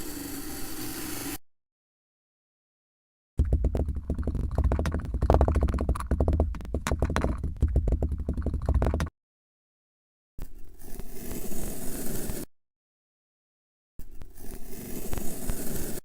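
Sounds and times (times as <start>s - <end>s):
rapid crackling and clicking: 3.4s - 9.1s.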